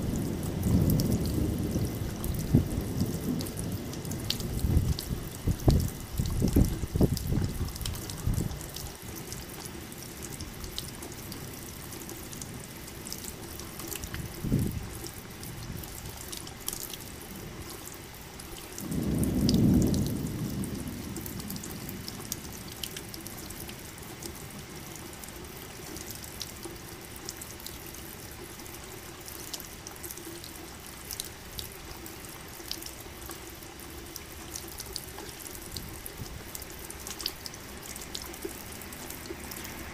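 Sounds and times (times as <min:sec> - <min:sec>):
steady rain: 0:00.0 - 0:39.9
thunder rolls: 0:00.1 - 0:08.5, 0:18.8 - 0:22.2.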